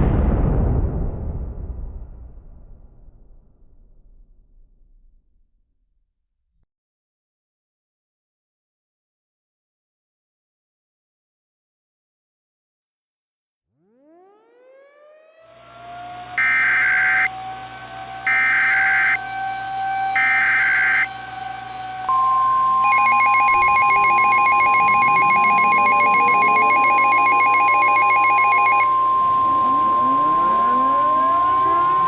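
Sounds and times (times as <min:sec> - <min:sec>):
siren wailing: 0:16.4 - 0:17.3, 0:18.3 - 0:19.3, 0:20.1 - 0:21.1, 0:22.9 - 0:28.9
harsh two-tone attention signal: 0:20.2 - 0:21.1, 0:22.9 - 0:28.9
steady warning tone: 0:20.2 - 0:21.1, 0:22.9 - 0:28.9
screechy digital data bursts: 0:22.9 - 0:28.8.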